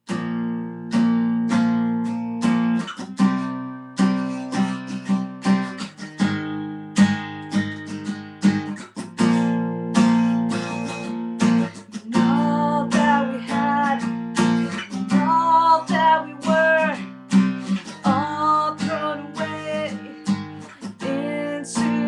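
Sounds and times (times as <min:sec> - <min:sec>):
acoustic guitar strumming chords: 0:00.0 - 0:22.0.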